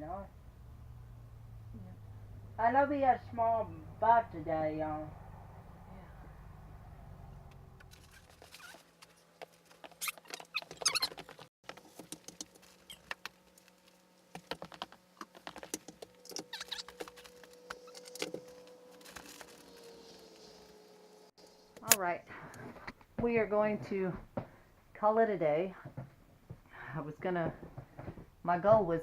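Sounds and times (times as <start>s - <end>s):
short squeaks: 7.8s - 11.5s, 12.7s - 13.2s, 16.1s - 20.8s.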